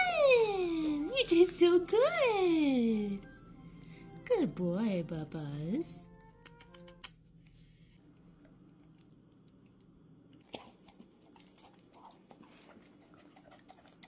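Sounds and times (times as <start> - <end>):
faint small clicks and smacks: 6.4 - 7.6.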